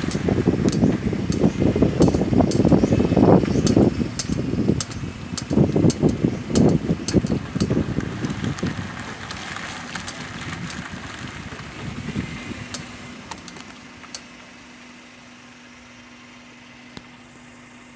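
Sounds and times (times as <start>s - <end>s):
sharp clicks: 0.0s - 8.7s
car driving rumble: 0.0s - 17.9s
engine idling hum: 0.0s - 17.9s.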